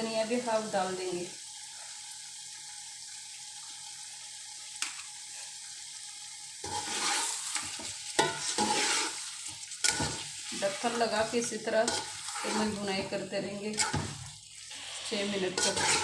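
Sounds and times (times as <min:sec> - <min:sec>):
chicken sizzling in a pot: 0:00.0 - 0:16.0
spoon stirring and scraping: 0:06.6 - 0:16.0.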